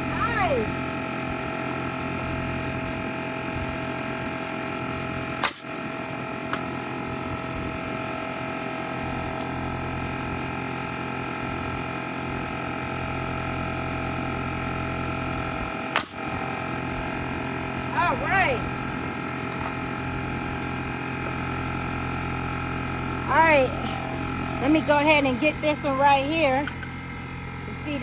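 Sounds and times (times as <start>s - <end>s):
air compressor humming: 0.0s - 28.0s
nail gun firing: 5.4s - 5.7s, 15.9s - 16.3s.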